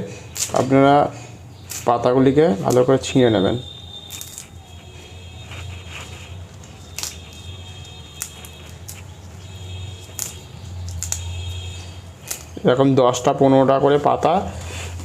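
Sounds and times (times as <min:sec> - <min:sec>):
leaves being torn by hand: 0:00.3 - 0:00.8, 0:01.6 - 0:02.0, 0:02.6 - 0:03.0, 0:04.0 - 0:04.8, 0:05.4 - 0:12.6.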